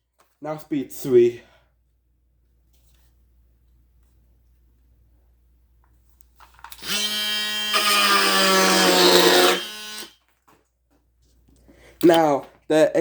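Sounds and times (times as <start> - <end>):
oscillating multi-tool cutting wood: 6.7 - 10.2.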